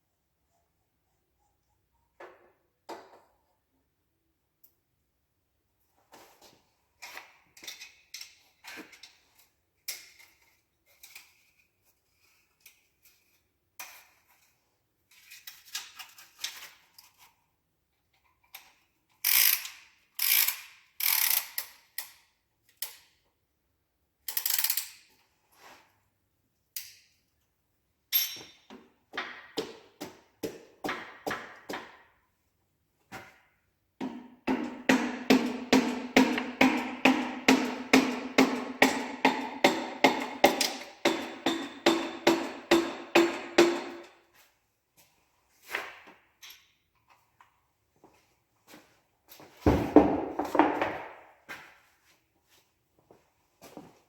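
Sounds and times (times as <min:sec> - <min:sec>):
ratchet wrench clicking: 0:19.2 - 0:22.2, 0:24.3 - 0:25.0
metal tools clinking: 0:28.1 - 0:28.7.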